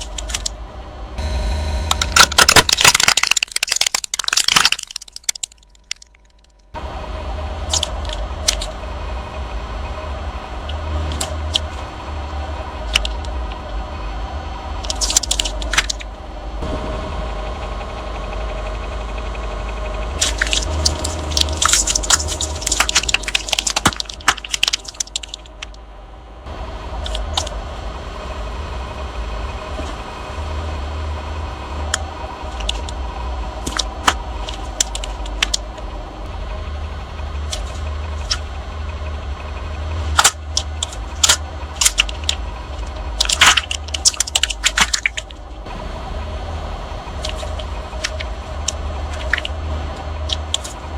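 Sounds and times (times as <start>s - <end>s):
objects crunching under tyres: 0.0s - 0.5s, 1.4s - 6.8s, 7.7s - 8.8s, 12.8s - 13.7s, 14.8s - 16.9s, 20.1s - 25.8s, 31.8s - 35.9s, 37.4s - 38.5s, 39.8s - 45.7s, 47.1s - 50.9s
car engine running: 0.0s - 4.8s, 5.4s - 50.9s.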